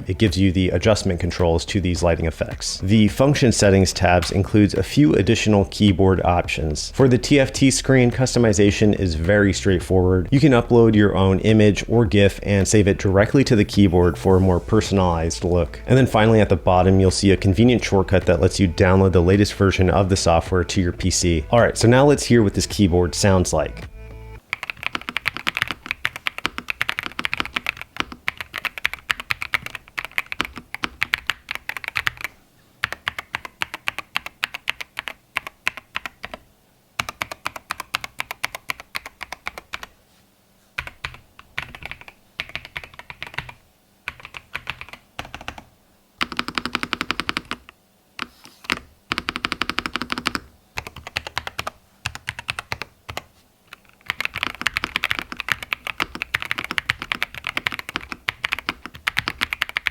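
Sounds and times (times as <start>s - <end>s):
mechanical keyboard typing: 24.5s - 36.4s, 37.0s - 39.9s, 40.8s - 59.9s.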